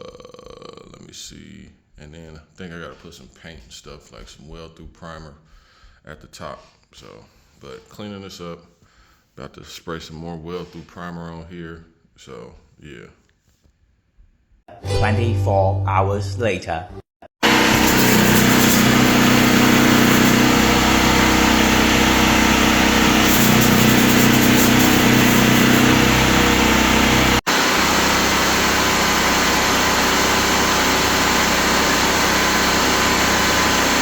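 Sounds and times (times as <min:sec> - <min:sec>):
loud steady machine noise: 0:17.4 - 0:34.0.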